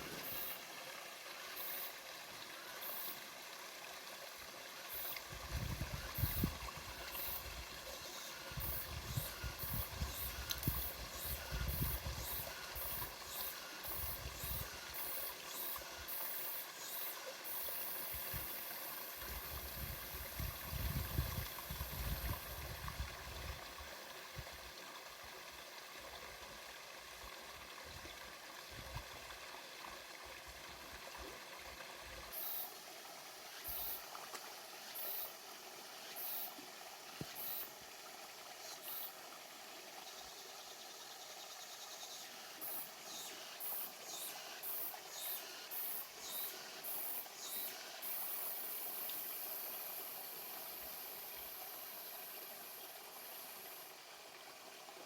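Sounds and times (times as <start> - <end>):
wind rumbling on microphone: 5.3 - 7.0, 8.5 - 12.2, 19.4 - 23.8.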